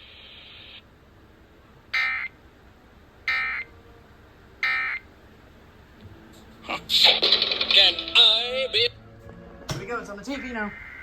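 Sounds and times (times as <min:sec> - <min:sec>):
harsh electronic data bursts: 0:06.8 - 0:08.9.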